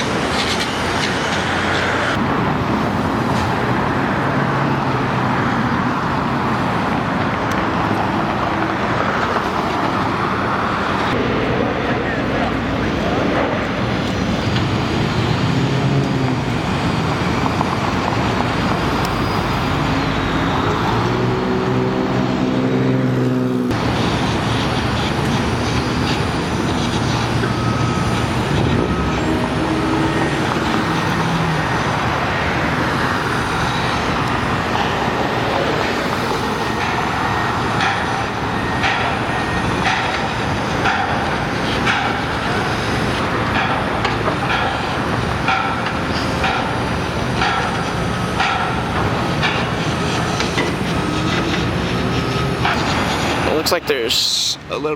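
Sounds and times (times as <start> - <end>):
traffic road noise: 0.0 - 54.9
vehicle engines passing: 0.0 - 54.9.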